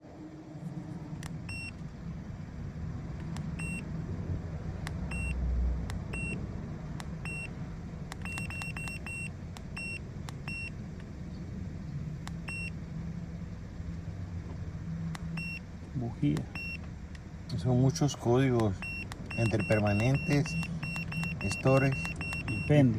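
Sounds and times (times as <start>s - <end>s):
car engine humming: 0.3s - 22.9s
scan tool short beeps: 3.5s - 3.8s, 4.9s - 5.4s, 6.0s - 6.4s, 7.1s - 7.5s, 8.2s - 10.8s, 15.2s - 15.6s, 16.4s - 16.8s, 18.6s - 22.9s
light button clicks: 8.1s - 11.1s, 12.2s - 12.5s.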